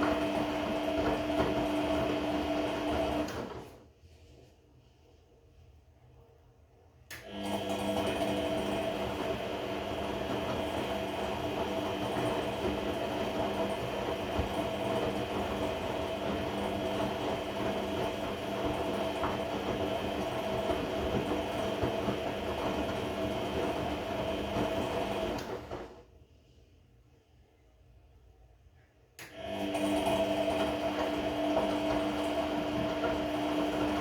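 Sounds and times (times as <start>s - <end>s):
washing machine drum tumbling: 0.0s - 3.6s, 8.8s - 25.8s.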